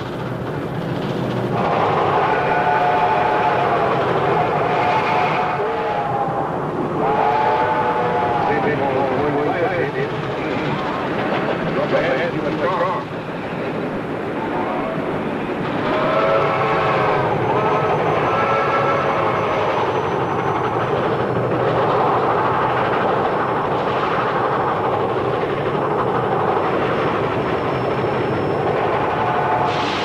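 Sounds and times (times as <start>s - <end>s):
train rail rumble and clatter: 0.0s - 30.0s.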